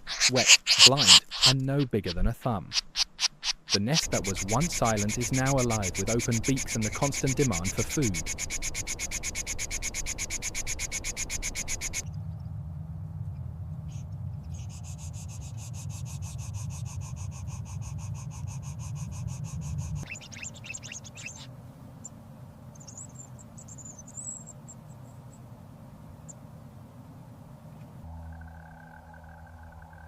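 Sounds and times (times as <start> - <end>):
falling bird chirps: 0.0 - 12.0, 17.8 - 21.5, 22.7 - 25.2
faint high twittering: 0.0 - 12.5, 13.8 - 22.1, 22.7 - 25.4, 28.0 - 30.0
high insect trill: 2.8 - 12.0, 28.1 - 30.0
low rumble: 12.0 - 14.8.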